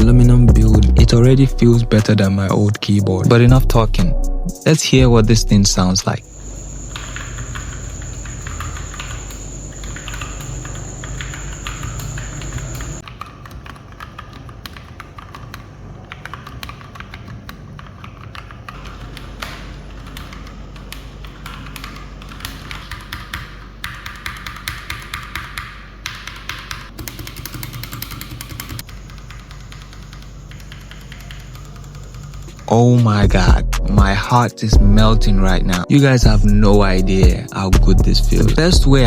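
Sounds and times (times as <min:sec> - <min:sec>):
soft background music: 0:00.0 - 0:13.0, 0:31.0 - 0:39.0
mechanical keyboard typing: 0:06.5 - 0:33.2.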